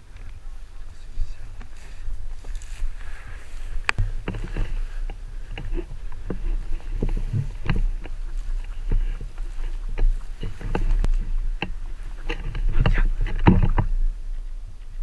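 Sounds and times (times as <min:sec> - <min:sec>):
steady low rumble: 0:00.0 - 0:15.0
knocks and clicks of handling: 0:03.9 - 0:13.9.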